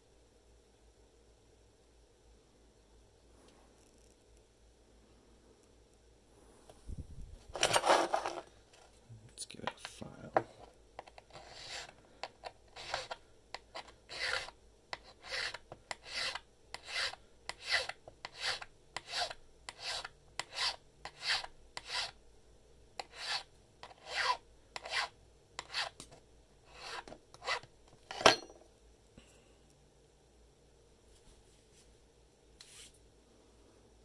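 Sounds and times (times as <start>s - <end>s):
hand file rasping on key: 12.8s - 22.2s, 23.0s - 26.0s, 26.7s - 27.6s.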